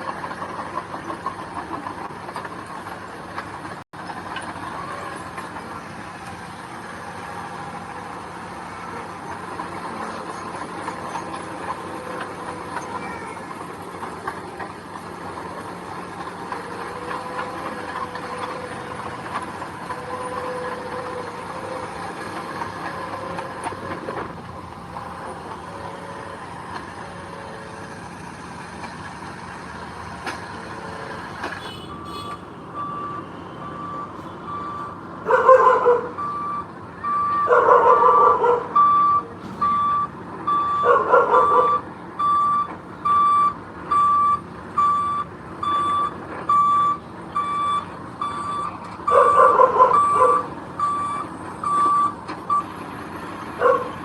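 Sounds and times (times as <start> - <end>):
diesel engine running: 0.0 - 54.0
reversing alarm beeping: 31.8 - 52.7.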